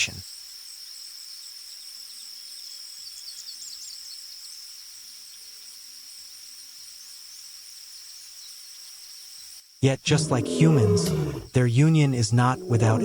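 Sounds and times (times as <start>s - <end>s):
insects shrilling: 9.8s - 13.0s.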